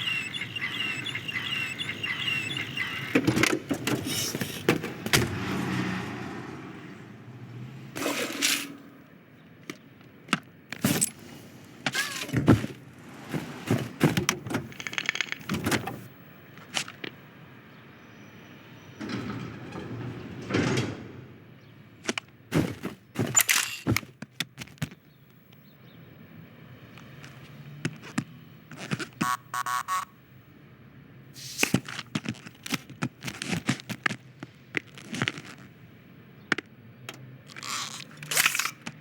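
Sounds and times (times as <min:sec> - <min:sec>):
scraping rustling sound: 0:08.0 - 0:09.0
clattering rattles: 0:11.9 - 0:16.1.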